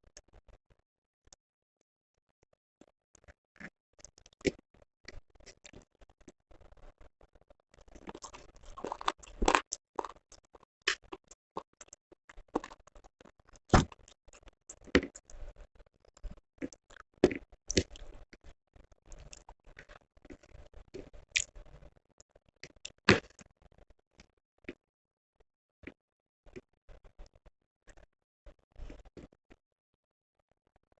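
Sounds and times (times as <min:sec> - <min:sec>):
chewing with crunches: 0:03.2 - 0:07.1, 0:07.7 - 0:24.8.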